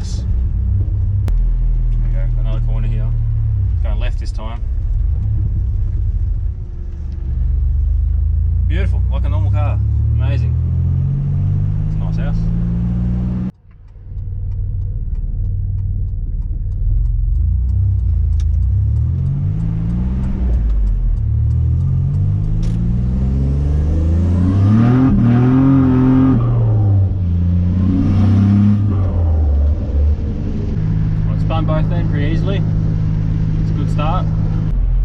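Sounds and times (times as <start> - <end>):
car engine idling and revving: 0.0 - 35.0.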